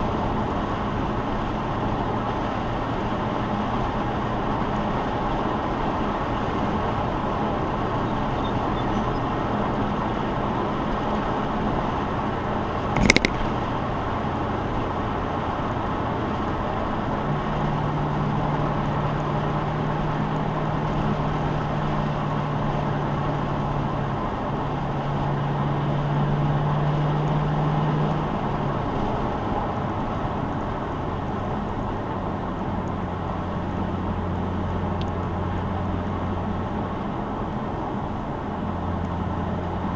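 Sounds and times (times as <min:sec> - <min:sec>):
car engine drone: 0:00.0 - 0:39.9
tyre and road noise: 0:00.0 - 0:39.9
sharp knock: 0:13.0 - 0:13.5.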